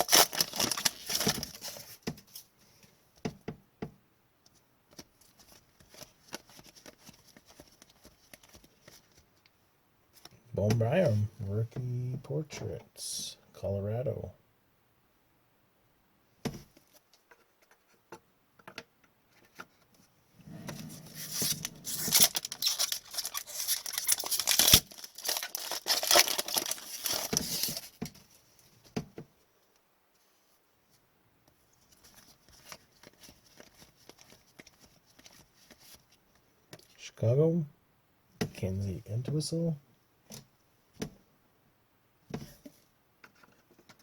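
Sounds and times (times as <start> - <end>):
wrapper tearing and crinkling: 0.0 - 1.8, 21.2 - 28.0.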